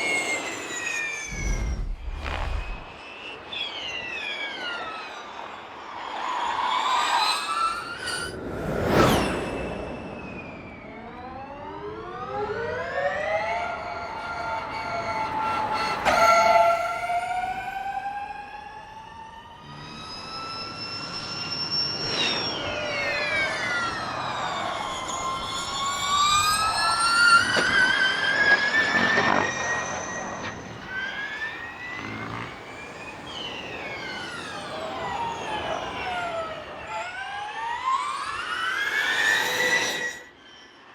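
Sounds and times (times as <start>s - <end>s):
car rushing past: 1.3s - 3.0s
electric race car motor whine: 19.6s - 40.9s.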